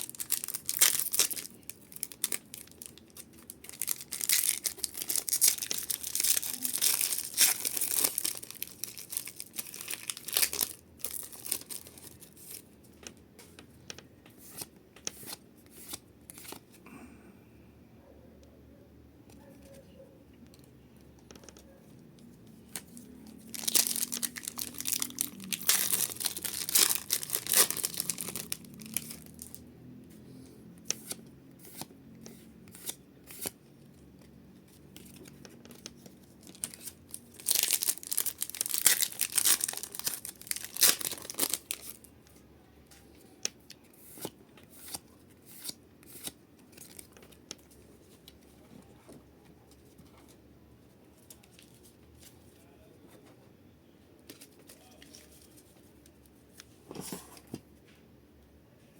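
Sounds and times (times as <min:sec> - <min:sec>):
wrappers torn and crinkled: 0:00.0 - 0:12.6, 0:22.7 - 0:29.6, 0:34.9 - 0:42.1.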